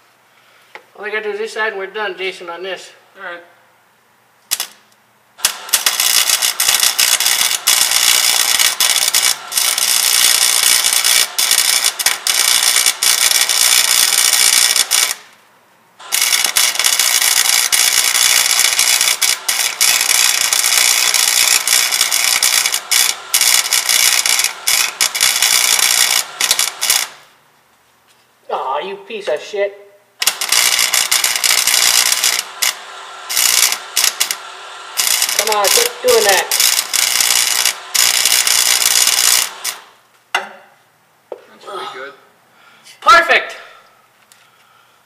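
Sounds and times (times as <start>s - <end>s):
arc welder crackling: 4.4s - 27.4s, 30.2s - 40.5s.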